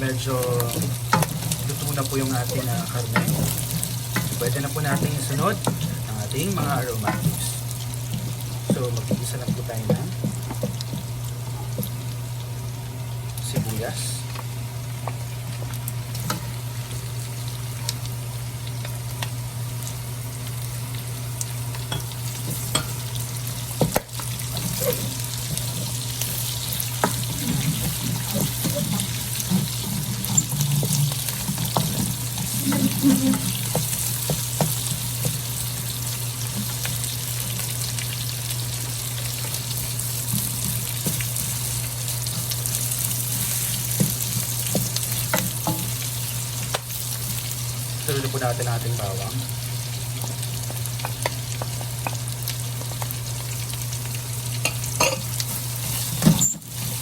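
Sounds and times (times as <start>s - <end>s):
onions sizzling in a pan: 0.0s - 57.0s
spatula scraping a pan: 24.5s - 35.4s.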